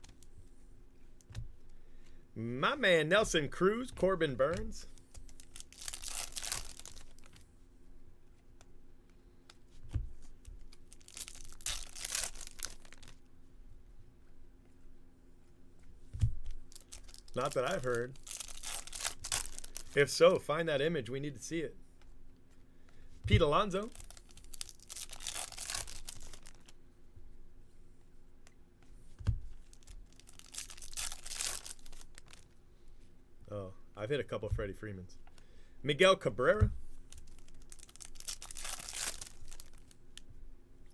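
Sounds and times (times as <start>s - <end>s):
cards being handled: 3.1s - 7.4s, 9.5s - 13.2s, 15.9s - 20.4s, 23.1s - 26.7s
foil wrappers crinkling and tearing: 3.1s - 7.4s, 10.2s - 13.2s, 16.4s - 20.2s, 23.4s - 26.8s, 29.7s - 32.6s, 37.0s - 40.2s.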